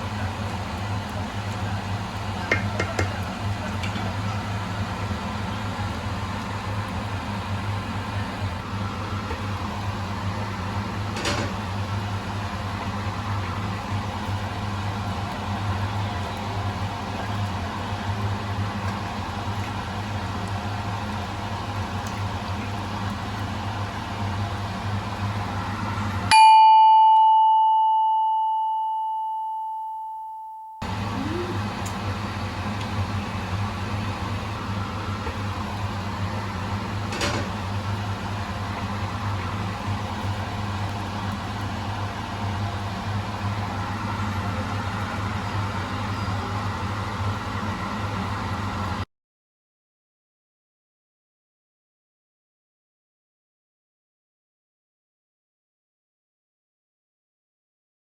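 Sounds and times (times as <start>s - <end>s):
low mechanical hum: 0.0s - 49.1s
bell-like ding: 26.3s - 30.8s
steady noisy hum: 30.8s - 49.0s.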